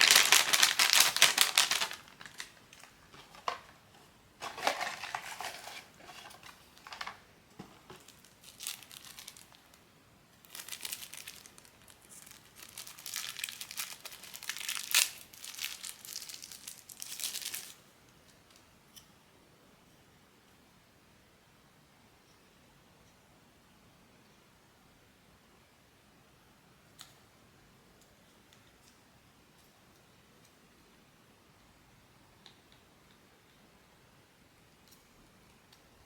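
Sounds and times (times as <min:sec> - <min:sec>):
packaging crinkling and tearing: 0:00.0 - 0:03.7, 0:04.4 - 0:07.2, 0:07.9 - 0:09.8, 0:10.4 - 0:17.8.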